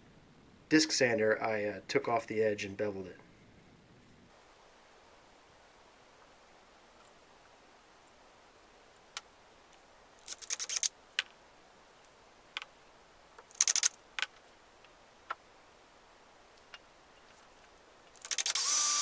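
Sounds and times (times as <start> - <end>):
small hard objects clicking and rattling: 10.2 - 11.4, 13.4 - 14.5, 16.6 - 18.7.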